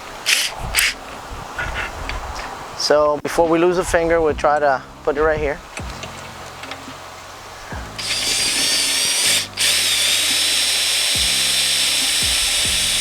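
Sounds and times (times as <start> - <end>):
power tool whining: 7.7 - 13.0.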